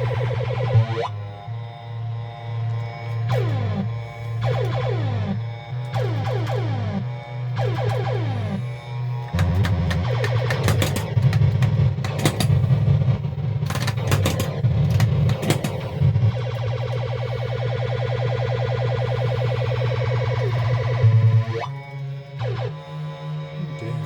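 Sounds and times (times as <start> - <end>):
loud low buzzing hum: 0.0 - 24.0
sharp clicks: 9.3 - 17.3
pinball electronic sound effects: 9.3 - 21.8.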